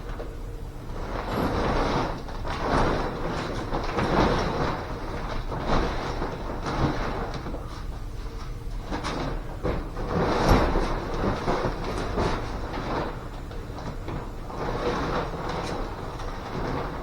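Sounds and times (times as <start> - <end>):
fabric cover rustling: 0.9 - 17.0.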